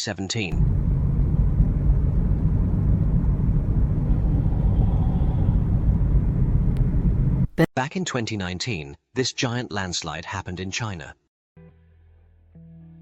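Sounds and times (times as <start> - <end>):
car road and engine rumble: 0.6 - 7.6.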